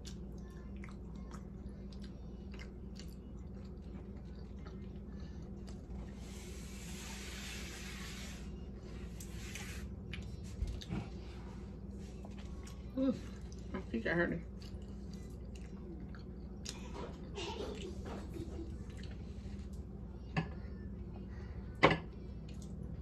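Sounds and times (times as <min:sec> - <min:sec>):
quiet chewing: 0:00.0 - 0:06.2, 0:09.1 - 0:13.8, 0:14.4 - 0:20.0
steady low hum: 0:00.0 - 0:23.0
soft hissing: 0:06.2 - 0:09.9.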